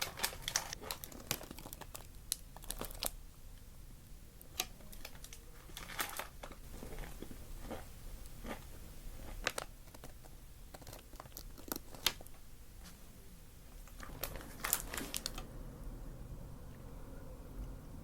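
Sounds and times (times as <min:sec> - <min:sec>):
paper wrapping crinkling and tearing: 0:00.0 - 0:03.2, 0:04.6 - 0:07.2, 0:13.9 - 0:15.5.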